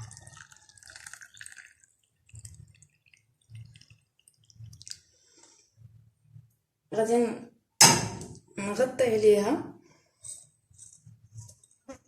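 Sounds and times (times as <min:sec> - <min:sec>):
water pouring into a glass: 0:00.0 - 0:05.4
faint water drips: 0:00.0 - 0:06.6.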